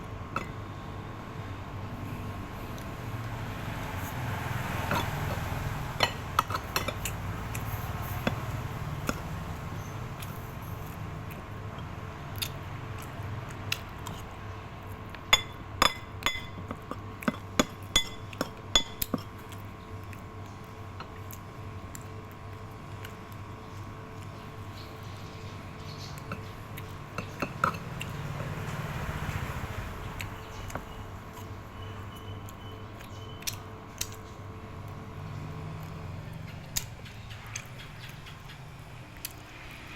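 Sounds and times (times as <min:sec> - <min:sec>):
low steady hum: 0:00.0 - 0:39.9
utensils clinking against cookware: 0:06.0 - 0:07.2.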